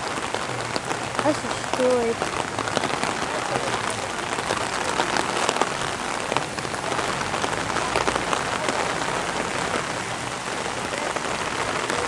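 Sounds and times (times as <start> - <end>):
raindrops pattering close by: 0.0 - 12.0
steady rain hiss: 0.0 - 12.0.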